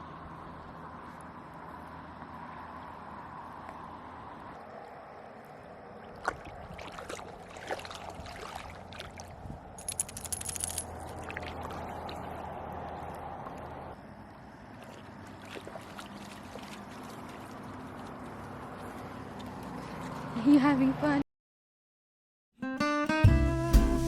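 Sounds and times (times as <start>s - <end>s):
crackling splashes: 1.0s - 9.7s, 10.9s - 20.4s
water splashing at shore: 5.9s - 9.4s, 11.0s - 13.8s, 14.6s - 20.4s.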